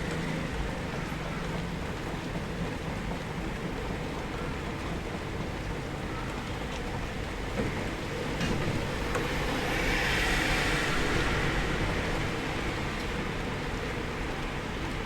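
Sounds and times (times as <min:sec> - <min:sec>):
steady rainfall: 0:00.0 - 0:15.0.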